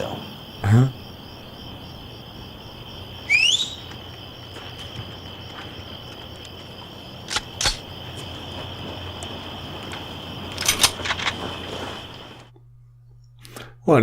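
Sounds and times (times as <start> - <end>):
crickets chirping: 0.0 - 13.8
rising whistle-like glide: 3.3 - 3.9
sharp clicks: 7.2 - 7.9, 9.9 - 11.4.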